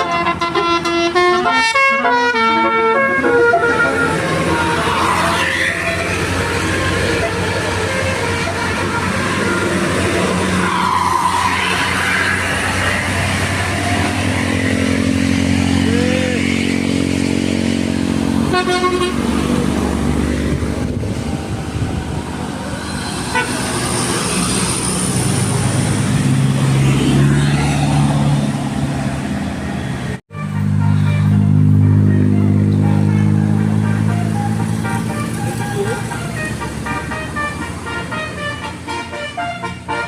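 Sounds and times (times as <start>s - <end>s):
musical bus air horns: 0.0s - 16.7s, 17.7s - 19.8s, 22.9s - 24.8s, 30.3s - 40.0s
bus engines running: 0.0s - 40.0s
road noise: 0.0s - 40.0s.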